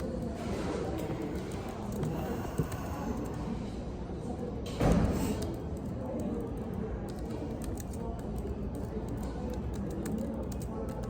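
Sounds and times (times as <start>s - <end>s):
computer keyboard typing: 5.4s - 11.0s.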